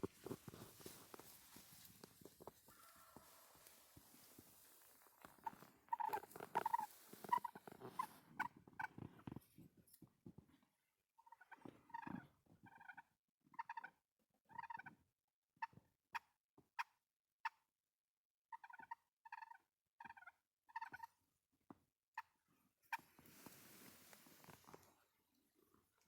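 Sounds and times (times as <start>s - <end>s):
wild turkeys gobbling: 2.7s - 4.3s, 5.4s - 8.5s.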